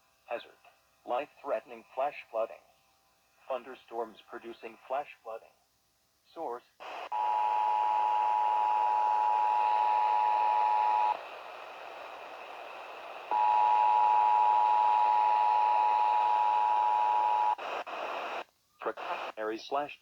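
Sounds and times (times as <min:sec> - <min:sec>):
radio hiss: 0:06.3 - 0:20.0.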